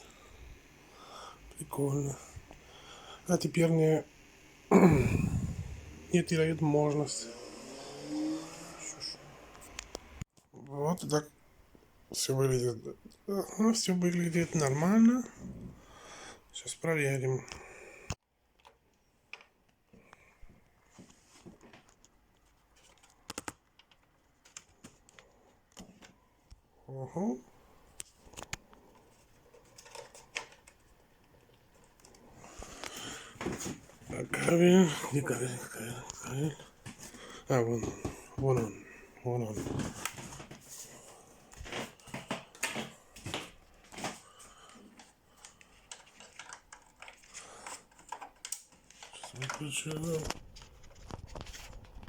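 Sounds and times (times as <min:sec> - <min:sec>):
clicks of cable and parts handled: 0:21.4 - 0:26.6, 0:28.0 - 0:33.9, 0:41.5 - 0:52.0
rustling of small objects: 0:27.8 - 0:52.0.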